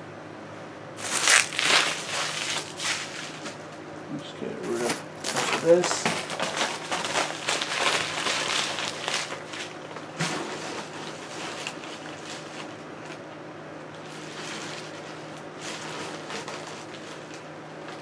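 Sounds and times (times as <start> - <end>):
packaging crinkling: 1.0 - 3.6, 4.6 - 10.1.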